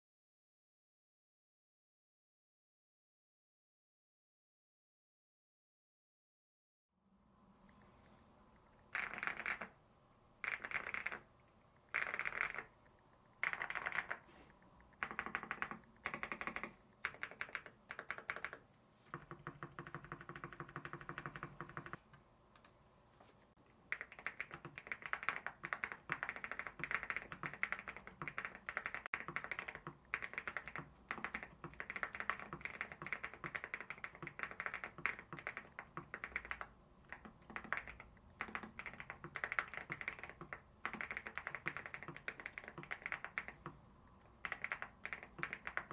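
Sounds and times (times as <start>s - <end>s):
mechanical keyboard typing: 8.9s - 9.8s, 10.4s - 11.3s, 11.9s - 12.8s, 13.4s - 14.2s, 15.0s - 22.0s, 23.9s - 45.9s.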